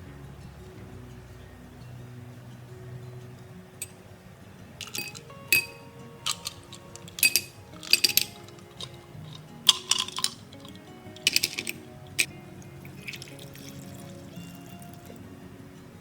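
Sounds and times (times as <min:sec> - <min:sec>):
soft background music: 0:00.0 - 0:16.0
metallic clinks and rattles: 0:04.7 - 0:15.1.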